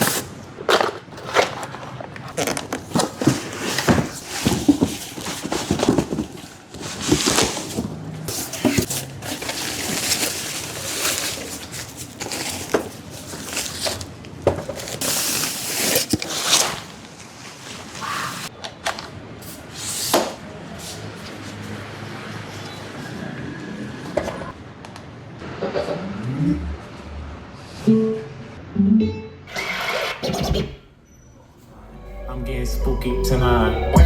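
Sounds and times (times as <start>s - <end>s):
packaging rustling and scraping: 0.0s - 21.8s.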